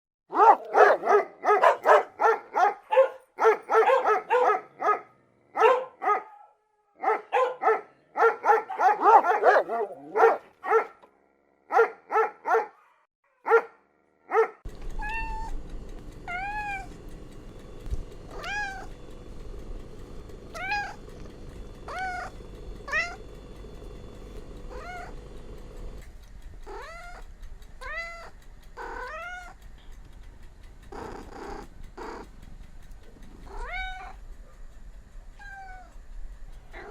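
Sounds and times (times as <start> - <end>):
steady background hum: 0.3 - 6.4, 7.0 - 11.6, 14.6 - 36.9
cats meowing: 14.8 - 15.6, 16.3 - 17.0, 18.3 - 19.0, 20.5 - 23.3, 24.7 - 25.3, 26.6 - 29.6, 33.4 - 34.2, 35.3 - 36.0.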